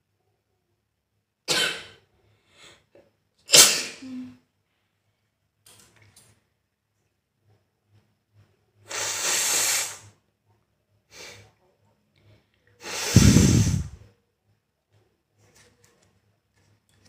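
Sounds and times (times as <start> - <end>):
person blowing nose: 3.5 - 4.1, 8.9 - 10.2, 12.8 - 14.0
short sniff: 8.9 - 10.1, 12.8 - 14.0.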